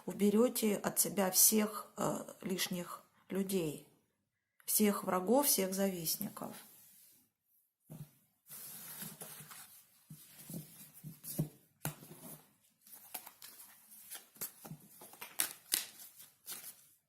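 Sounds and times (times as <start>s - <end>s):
cards being shuffled: 8.9s - 17.0s.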